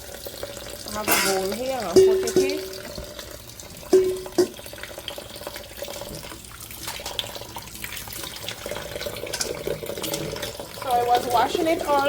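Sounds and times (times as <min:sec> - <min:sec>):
tap running into sink: 0:00.9 - 0:03.3, 0:03.9 - 0:04.9, 0:05.9 - 0:07.4
water splashing: 0:00.9 - 0:04.7.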